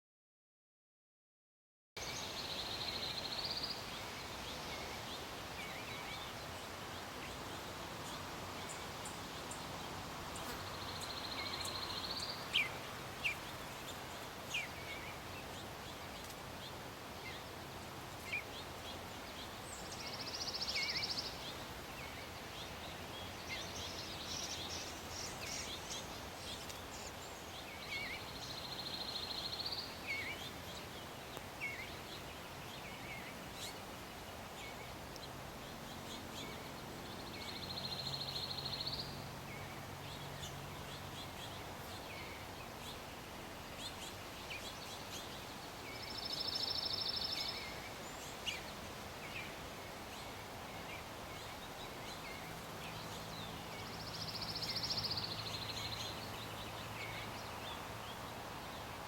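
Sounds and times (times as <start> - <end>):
steady hiss: 2.0 - 59.0.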